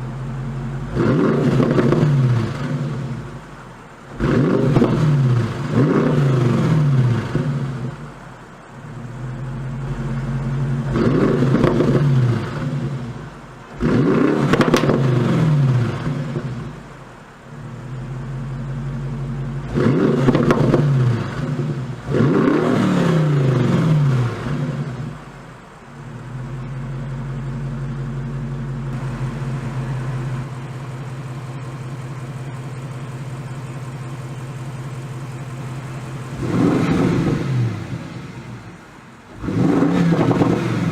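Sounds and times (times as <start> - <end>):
car engine idling: 0.0 - 40.9
car engine revving: 0.0 - 40.9.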